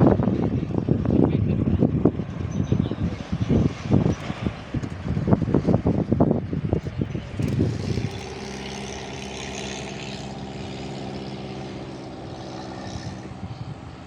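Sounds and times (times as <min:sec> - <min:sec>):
low buffeting: 0:00.0 - 0:14.0
steady engine drone: 0:00.0 - 0:14.0.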